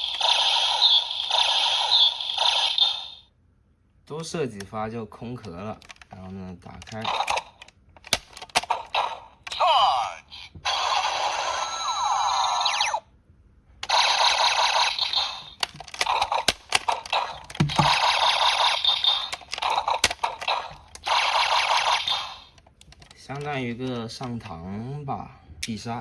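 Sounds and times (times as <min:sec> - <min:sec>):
toy electronic sound effects: 0:00.0 - 0:03.3, 0:06.8 - 0:07.7, 0:08.3 - 0:13.1, 0:13.8 - 0:22.6
plastic toy clicks: 0:05.4 - 0:09.6, 0:13.8 - 0:24.4.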